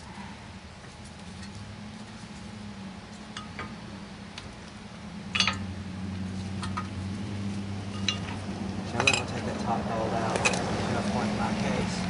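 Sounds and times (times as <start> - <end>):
low hum: 0.0 - 9.9
metal tools clinking: 5.4 - 5.7, 7.9 - 8.4, 9.0 - 9.4.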